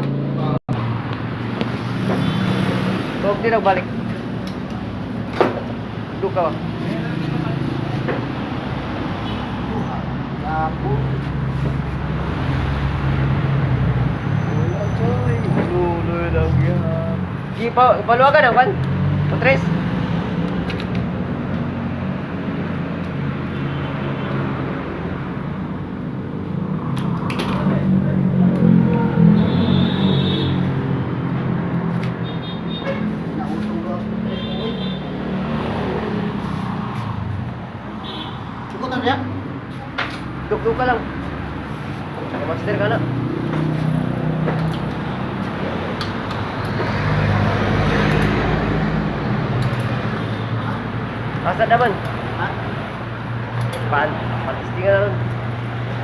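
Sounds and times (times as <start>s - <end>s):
motor vehicle engine drone: 24.5s - 32.2s, 38.7s - 56.0s.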